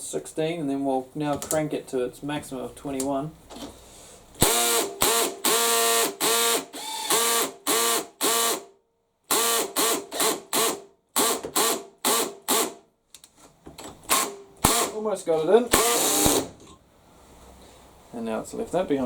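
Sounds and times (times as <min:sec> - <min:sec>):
drill clutch ratcheting: 0:04.4 - 0:08.6, 0:15.7 - 0:16.6
drill motor whine: 0:04.4 - 0:08.6, 0:15.8 - 0:16.5.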